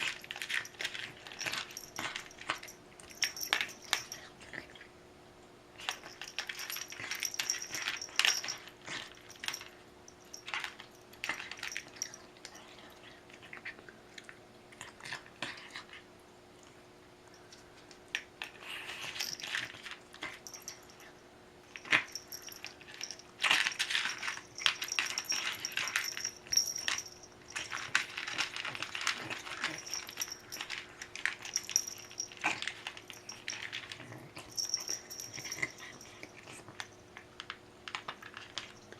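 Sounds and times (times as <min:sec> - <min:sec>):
dog crunching food: 0:00.0 - 0:02.8, 0:21.8 - 0:38.9
bowl clinking: 0:21.7 - 0:37.0.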